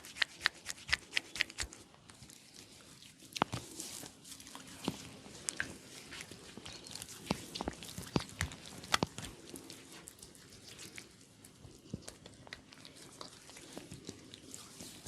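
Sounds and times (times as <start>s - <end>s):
fingers rubbing hair and scalp: 0.0s - 1.8s.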